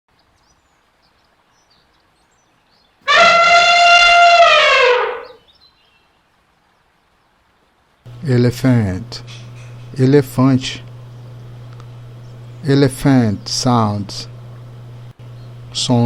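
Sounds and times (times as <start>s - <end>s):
elephant trumpeting: 3.1s - 5.4s.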